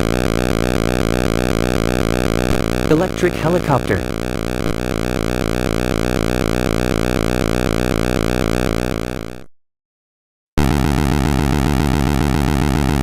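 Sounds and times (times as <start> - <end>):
pulsing buzzy synthesizer: 0.0 - 9.5.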